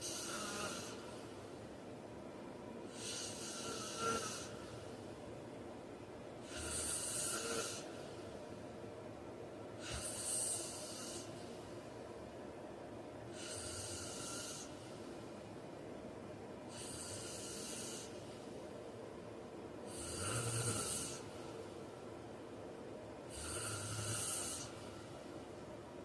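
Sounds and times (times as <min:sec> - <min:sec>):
man snoring: 0:00.0 - 0:01.2, 0:02.9 - 0:04.7, 0:06.4 - 0:07.9, 0:09.8 - 0:11.3, 0:13.4 - 0:14.8, 0:16.7 - 0:18.2, 0:19.9 - 0:21.3, 0:23.3 - 0:24.8.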